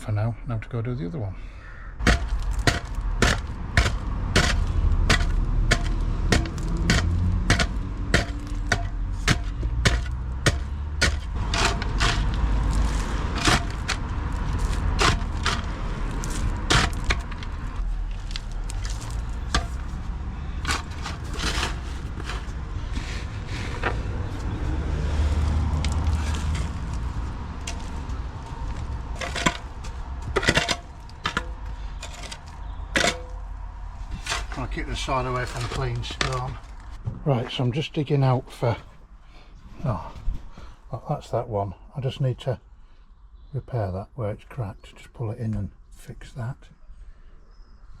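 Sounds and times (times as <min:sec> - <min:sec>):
digging tool striking ground: 0:02.0 - 0:33.4, 0:34.1 - 0:36.8.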